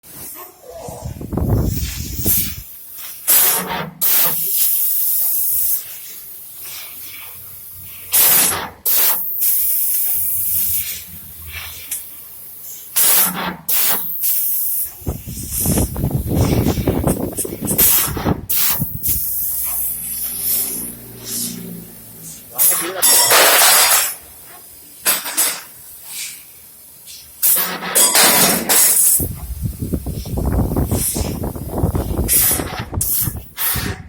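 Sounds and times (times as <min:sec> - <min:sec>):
compressed air hissing: 0:00.1 - 0:34.0.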